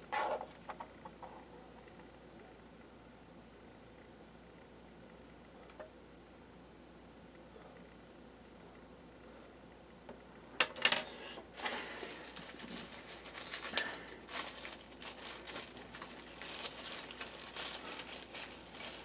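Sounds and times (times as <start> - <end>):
crinkling: 11.5 - 19.0
rustling: 11.5 - 19.0.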